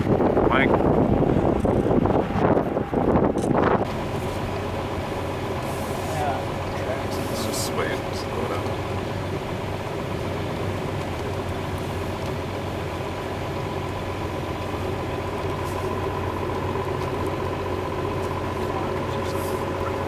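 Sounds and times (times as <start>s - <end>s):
engine and road drone in car cabin: 0.0s - 20.0s.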